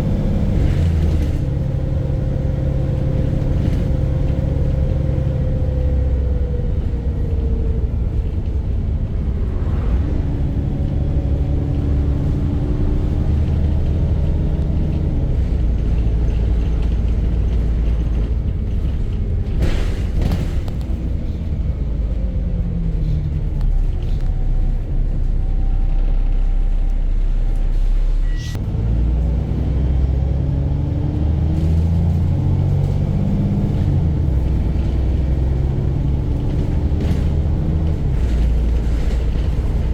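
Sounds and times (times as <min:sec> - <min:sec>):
bus diesel engine knocking: 0:10.8 - 0:27.5, 0:32.0 - 0:39.9.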